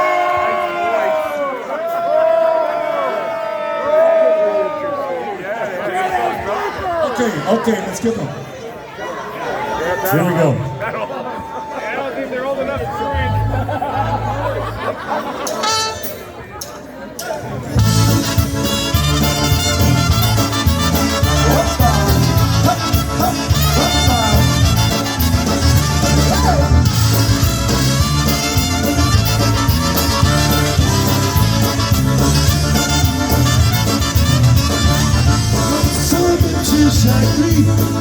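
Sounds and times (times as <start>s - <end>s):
bass line: 13.1s - 14.8s, 17.8s - 38.0s
polka band playing: 13.3s - 16.4s, 17.6s - 38.0s.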